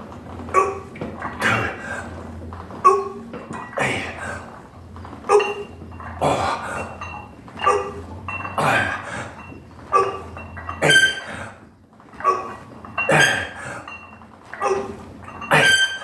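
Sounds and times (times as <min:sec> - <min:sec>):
short squeaky sound: 0:10.8 - 0:11.3.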